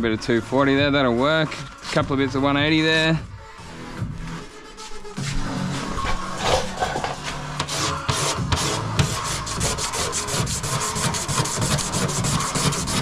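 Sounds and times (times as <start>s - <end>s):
razor blade scraping body filler: 6.4s - 13.0s.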